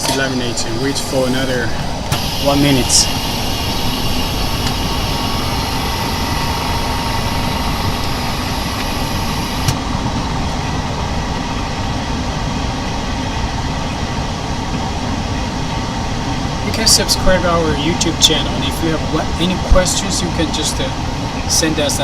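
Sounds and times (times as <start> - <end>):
laminating machine pump running: 1.9 - 9.8
high hiss: 2.1 - 9.7.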